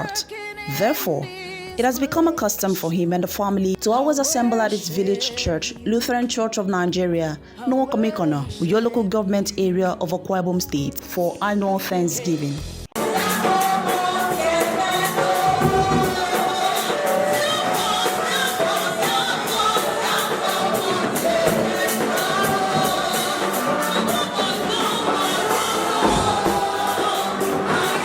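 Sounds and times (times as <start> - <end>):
choir singing: 13.0 - 28.0
percussion beat: 13.0 - 28.0.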